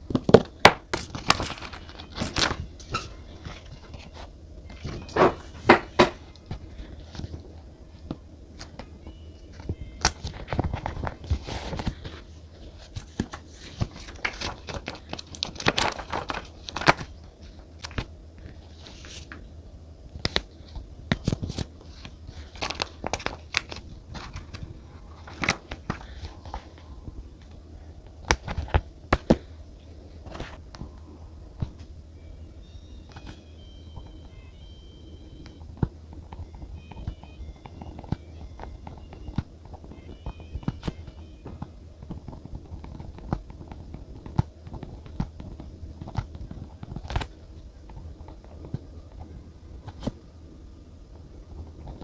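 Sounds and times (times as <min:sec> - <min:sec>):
paper rustling and crinkling: 0:00.1 - 0:08.9, 0:09.5 - 0:19.4, 0:20.2 - 0:27.6.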